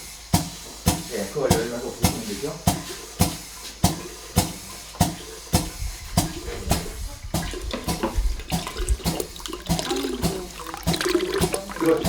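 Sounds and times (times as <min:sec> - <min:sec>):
pump clacking: 0:00.0 - 0:12.0
water splashing and gurgling: 0:06.1 - 0:12.0.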